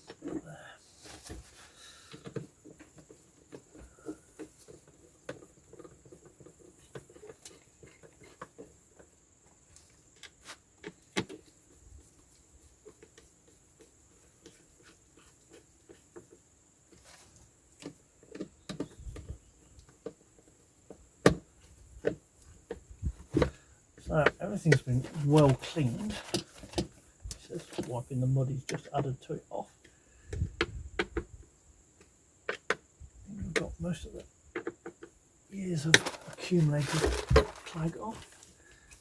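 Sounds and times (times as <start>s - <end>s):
tools and parts clicking and knocking: 35.8s - 38.5s.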